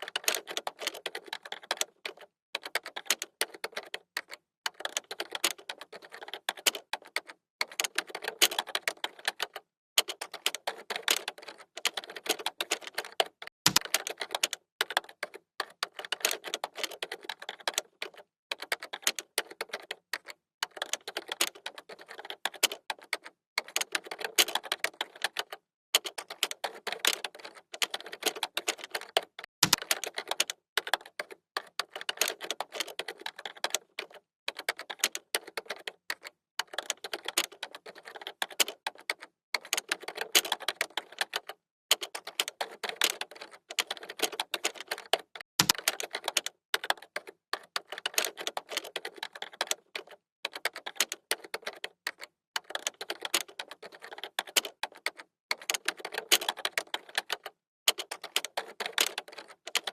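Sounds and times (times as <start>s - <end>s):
computer keyboard typing: 0.0s - 59.9s.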